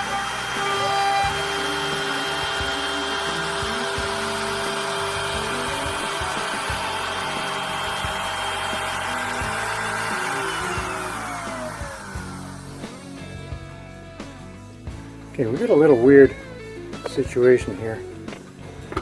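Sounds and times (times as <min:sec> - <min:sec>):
cnc router spindle whining: 0:00.0 - 0:13.1.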